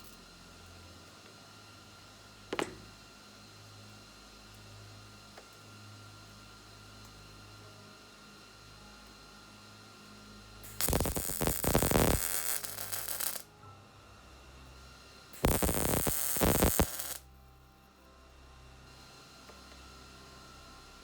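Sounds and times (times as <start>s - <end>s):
power tool on sheet metal: 10.7s - 13.4s, 15.4s - 17.2s.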